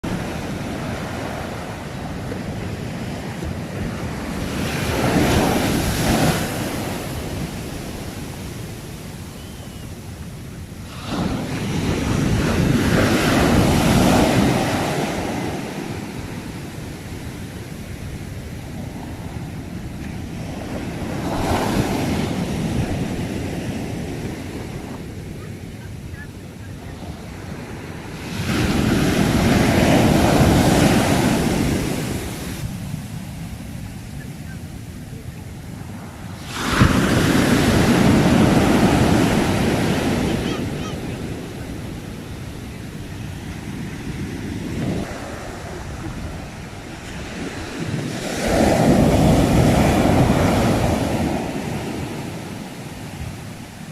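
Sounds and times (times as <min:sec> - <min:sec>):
sea waves breaking: 0:00.0 - 0:53.9.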